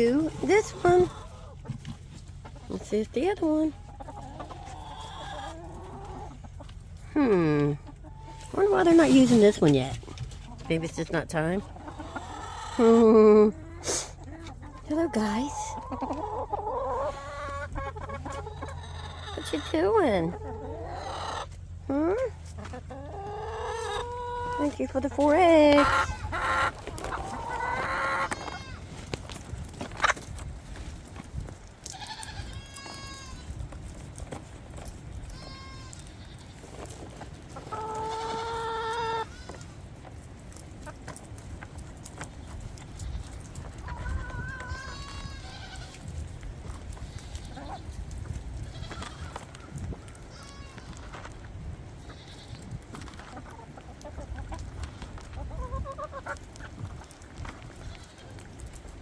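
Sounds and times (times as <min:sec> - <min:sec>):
goats bleating: 0:28.2 - 0:28.8, 0:31.9 - 0:33.5, 0:35.3 - 0:36.6, 0:44.5 - 0:46.0, 0:50.2 - 0:51.1, 0:52.0 - 0:52.6
wind rumble on microphone: 0:32.3 - 0:35.7, 0:42.5 - 0:53.3.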